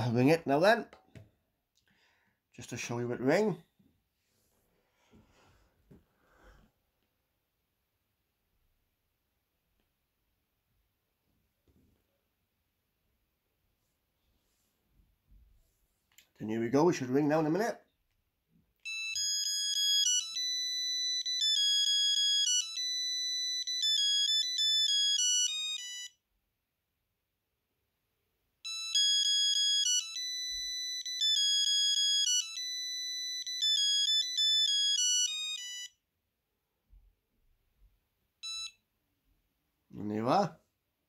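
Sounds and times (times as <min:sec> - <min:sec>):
electronic ringtone melody: 0:18.8 - 0:26.2, 0:28.6 - 0:36.0, 0:38.4 - 0:38.8.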